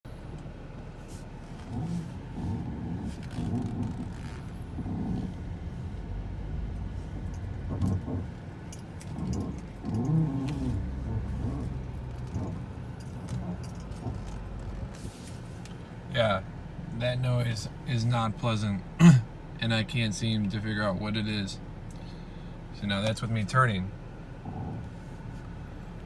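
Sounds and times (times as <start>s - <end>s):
car engine running: 0.0s - 26.0s
suspension creaking and groaning: 1.5s - 17.6s.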